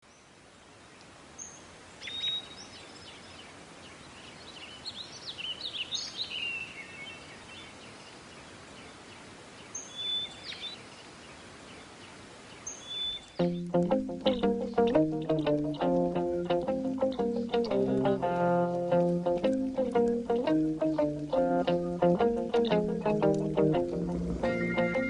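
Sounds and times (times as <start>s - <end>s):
outdoor background noise: 0.0s - 25.0s
songbirds chirping and whistling: 1.4s - 8.2s, 9.6s - 13.6s.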